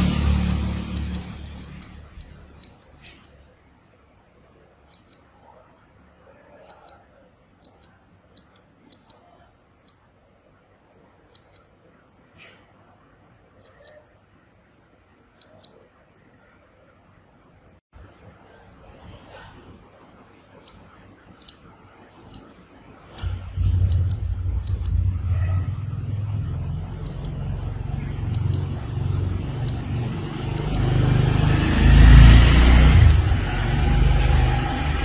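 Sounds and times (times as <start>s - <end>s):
sharp short clicks: 0.0s - 3.4s, 4.9s - 5.3s, 6.6s - 7.0s, 13.6s - 14.0s, 15.4s - 15.8s, 20.6s - 25.6s, 26.8s - 27.5s, 28.2s - 31.1s, 32.9s - 33.5s
loud low rumble: 23.2s - 35.0s.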